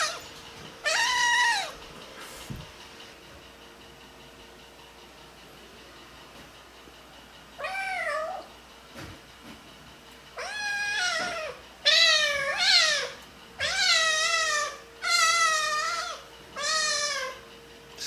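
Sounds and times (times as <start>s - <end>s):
kitten meowing: 0.8s - 1.8s, 10.4s - 17.4s.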